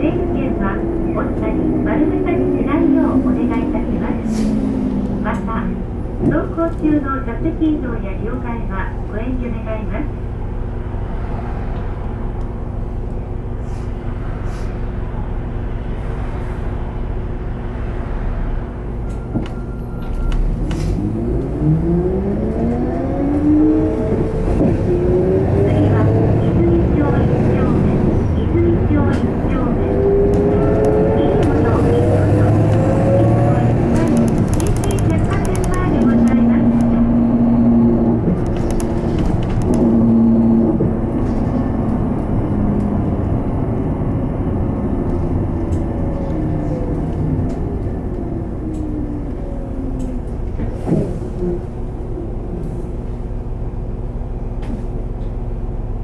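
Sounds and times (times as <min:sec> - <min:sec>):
bus engine running: 0:00.0 - 0:56.0
rising motor whine: 0:29.7 - 0:38.6.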